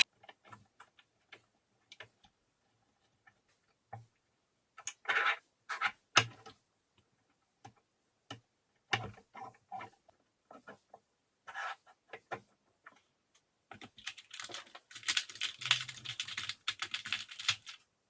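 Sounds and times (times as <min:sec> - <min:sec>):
small parts and tools clicking: 0:13.3 - 0:17.8.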